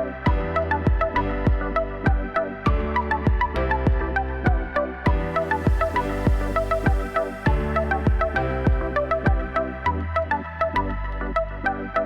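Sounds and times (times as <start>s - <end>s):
electronic music with synth melody: 0.0s - 12.0s.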